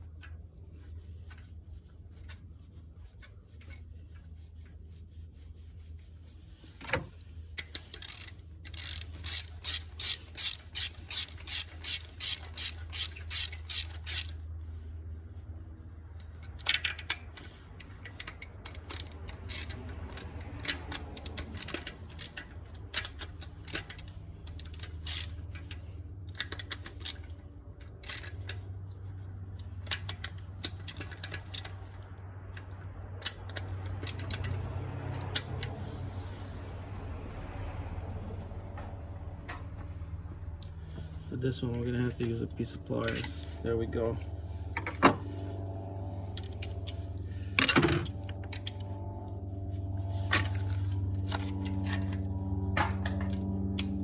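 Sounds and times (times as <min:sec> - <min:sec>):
ratchet wrench clicking: 0:07.6 - 0:14.4, 0:16.2 - 0:28.6, 0:29.5 - 0:36.4.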